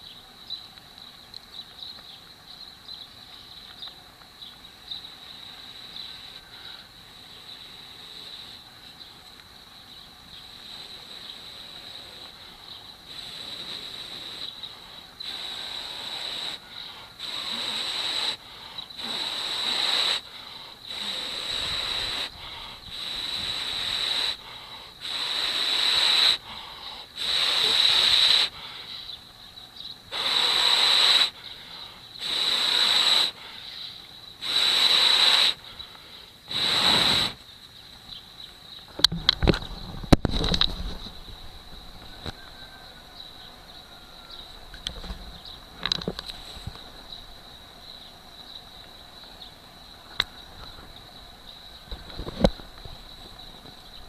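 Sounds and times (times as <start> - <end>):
person blowing long breaths: 13.1 - 29.1.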